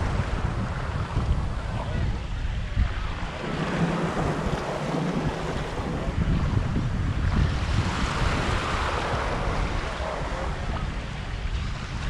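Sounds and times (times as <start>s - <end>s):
wind buffeting microphone: 0.0s - 12.0s
shallow sea water washing: 3.0s - 6.2s.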